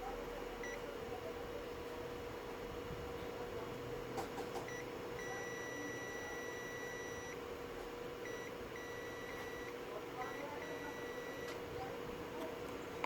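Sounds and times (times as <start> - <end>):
multimeter continuity beeps: 0.0 - 1.0, 4.5 - 7.5, 8.2 - 11.9.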